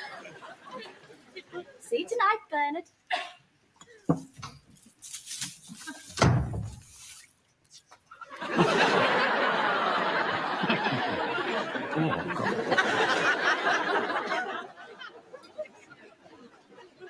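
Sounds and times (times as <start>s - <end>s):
studio audience laughing: 0.0s - 1.8s, 8.2s - 17.0s
dull thump: 6.2s - 6.9s.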